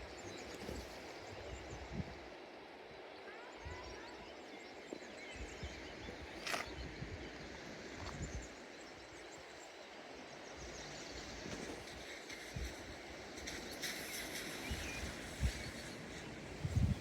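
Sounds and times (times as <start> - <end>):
steady hiss: 7.2 - 17.0.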